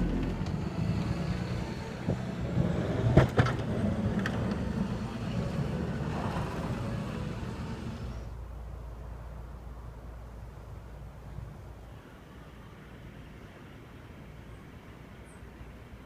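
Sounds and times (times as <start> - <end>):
motor vehicle running: 0.0 - 8.3
outdoor street noise: 0.0 - 16.0.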